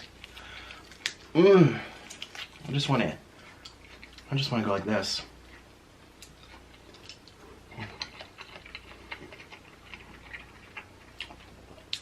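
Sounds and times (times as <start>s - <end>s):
sticky clicks of fruit eaten: 0.0s - 1.3s, 6.2s - 12.0s.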